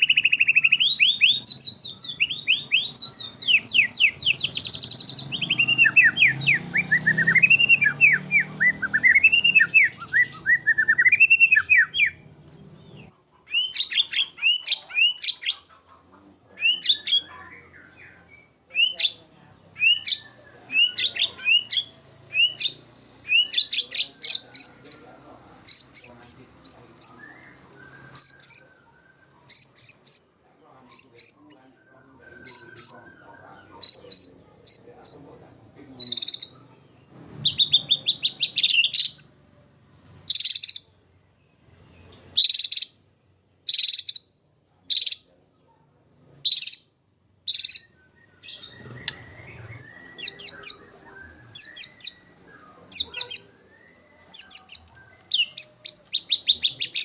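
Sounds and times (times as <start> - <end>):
bird buzzy rattling trill: 0.0 - 12.4, 18.4 - 27.2, 28.1 - 28.7, 29.4 - 31.5, 33.8 - 45.3
songbird whistled song: 0.0 - 39.4, 40.2 - 57.0.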